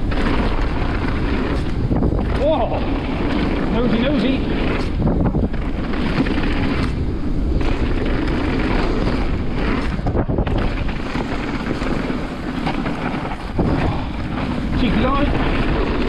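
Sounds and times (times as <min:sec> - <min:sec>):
low rumble of bike ride: 0:00.0 - 0:16.0
wind buffeting microphone: 0:00.0 - 0:16.0.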